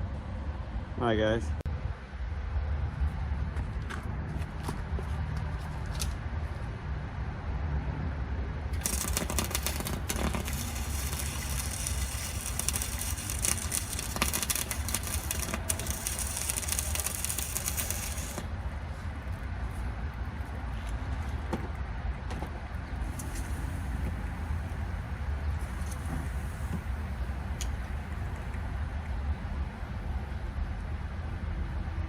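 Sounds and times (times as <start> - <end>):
welding arc crackling: 8.7 - 18.8, 23.0 - 28.5.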